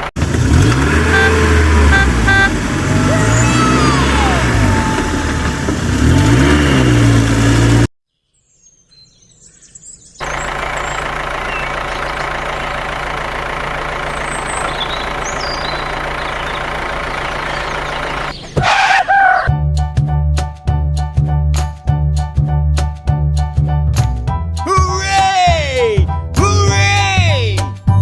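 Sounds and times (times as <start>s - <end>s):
steady engine hum: 0.0s - 7.8s, 10.2s - 18.9s
engine with rising and falling pitch: 0.0s - 7.9s
birds chirping: 8.2s - 12.4s, 14.0s - 19.5s.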